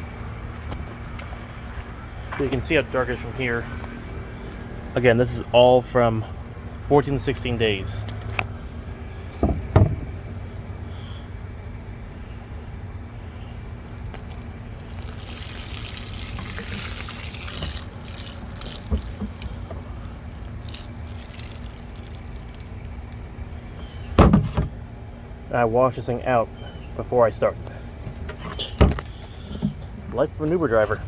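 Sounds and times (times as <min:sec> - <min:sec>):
water pouring from container: 0:14.2 - 0:24.2
thumps: 0:23.9 - 0:24.8.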